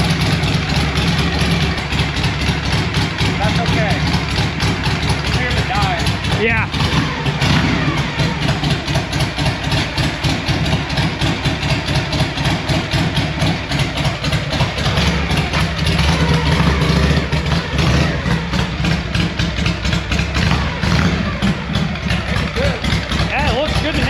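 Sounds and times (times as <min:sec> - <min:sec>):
motorcycle engine idling: 0:00.0 - 0:24.0.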